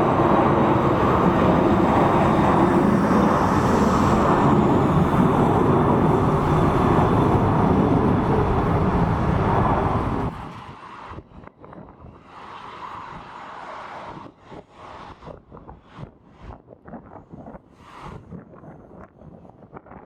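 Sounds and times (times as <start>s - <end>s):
jet engines rumbling: 0.0s - 10.7s
wind buffeting microphone: 0.0s - 12.3s.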